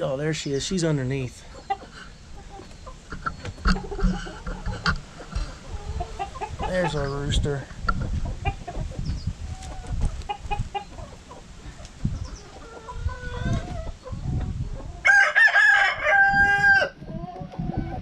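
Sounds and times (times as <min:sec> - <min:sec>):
hens clucking: 0:00.1 - 0:18.0
rooster crowing: 0:15.0 - 0:17.0.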